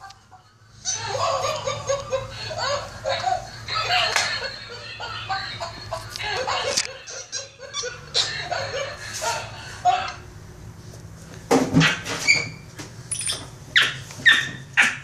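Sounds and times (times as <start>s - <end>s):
toy monkey recorded laughter: 0.0s - 10.2s.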